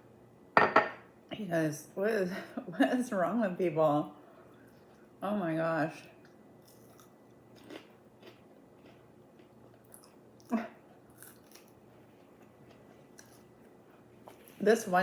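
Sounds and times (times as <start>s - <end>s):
chewing food: 6.2s - 14.6s.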